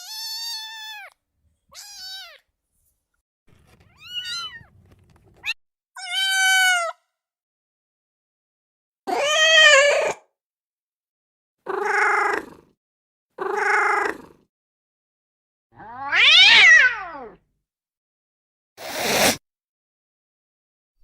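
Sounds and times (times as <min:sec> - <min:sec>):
cat meowing: 0:00.0 - 0:02.4, 0:03.9 - 0:04.7, 0:05.4 - 0:07.0, 0:09.1 - 0:10.2, 0:11.7 - 0:12.5, 0:13.4 - 0:14.2, 0:15.8 - 0:17.4.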